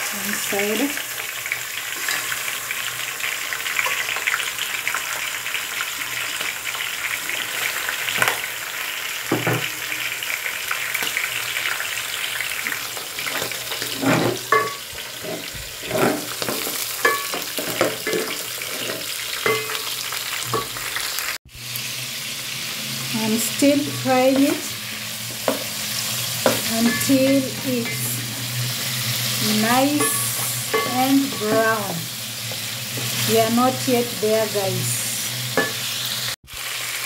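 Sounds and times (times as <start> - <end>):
food sizzling in oil: 0.0 - 37.0
spoon scraping a pot: 13.4 - 19.9, 30.0 - 31.8.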